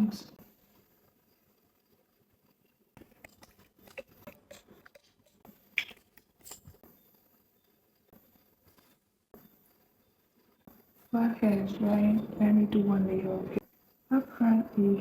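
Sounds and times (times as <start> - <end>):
handling clicks and rustles: 3.0 - 7.2.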